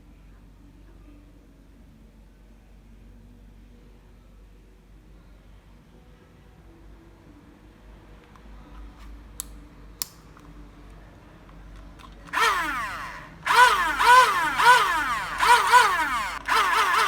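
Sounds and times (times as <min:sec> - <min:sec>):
sharp clicks: 0:12.0 - 0:17.0
small electric motor whining: 0:12.3 - 0:17.0.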